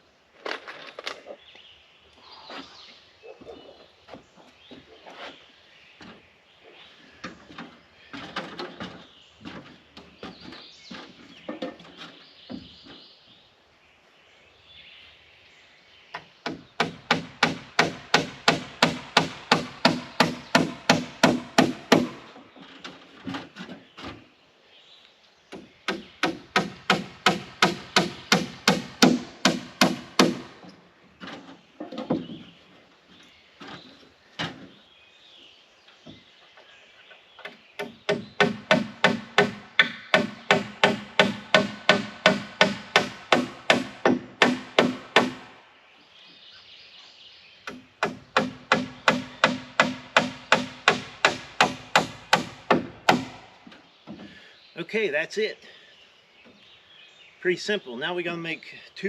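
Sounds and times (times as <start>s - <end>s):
lumber knocking and handling: 7.2s - 13.0s, 25.5s - 34.8s, 47.7s - 54.5s
hammer striking wood: 16.2s - 22.3s, 25.5s - 30.7s, 37.4s - 45.5s, 47.6s - 53.4s.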